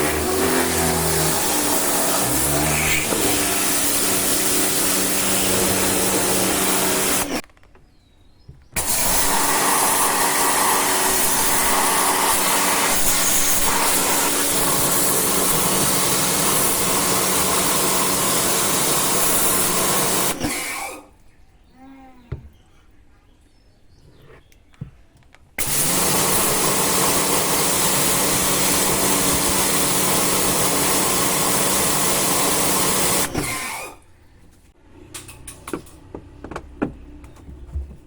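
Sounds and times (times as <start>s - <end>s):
pressure washer spraying: 0.0s - 7.4s, 8.8s - 20.6s, 25.6s - 33.6s.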